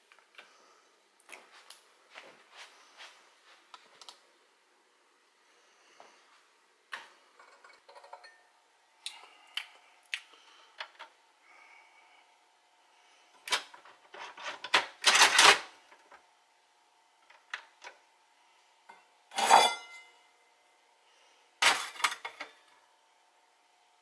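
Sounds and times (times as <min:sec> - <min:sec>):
faint steady hum: 0:00.0 - 0:24.0
metal parts clanking and rattling: 0:13.5 - 0:15.7.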